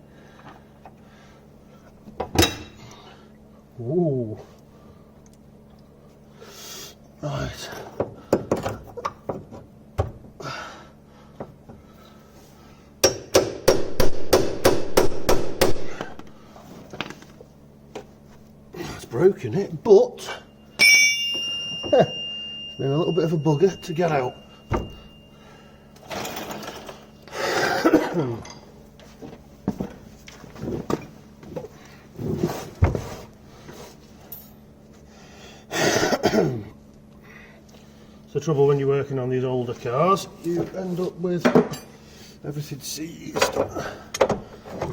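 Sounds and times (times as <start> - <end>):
hammer striking metal: 13.0 - 16.0, 20.8 - 25.3
metallic clank: 20.8 - 25.3.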